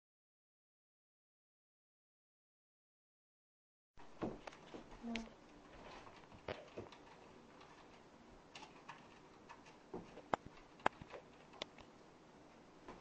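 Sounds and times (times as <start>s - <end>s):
computer keys clicking: 6.2s - 11.9s.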